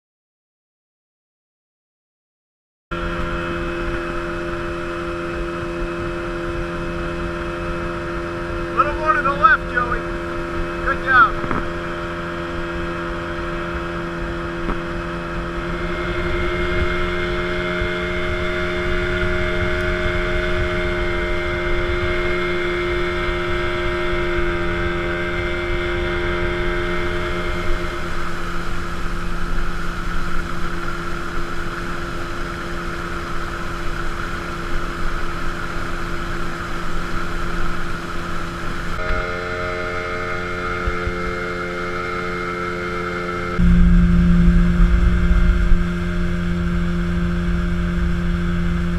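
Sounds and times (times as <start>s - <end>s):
motorboat engine running: 2.9s - 48.9s
wind: 2.9s - 48.9s.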